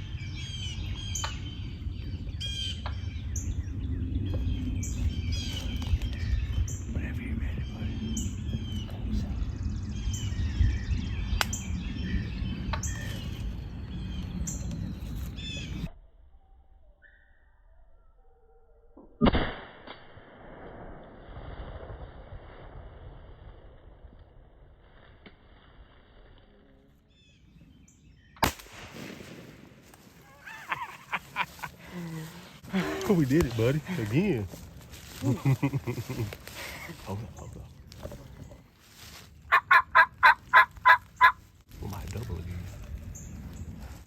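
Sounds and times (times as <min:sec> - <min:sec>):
songbirds chirping and singing: 0:00.0 - 0:15.9
low rumbling noise: 0:00.0 - 0:16.5
shotgun blast: 0:19.2 - 0:22.1, 0:28.4 - 0:29.9.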